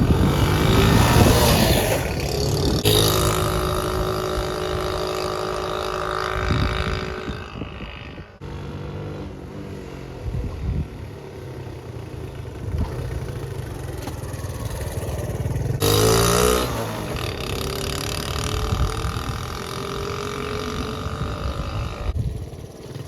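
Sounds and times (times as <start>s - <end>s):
whoosh with sliding pitches: 0.0s - 8.4s
wind noise on microphone: 0.0s - 8.4s, 10.1s - 11.5s, 14.7s - 23.0s
motorcycle engine running: 0.0s - 23.0s.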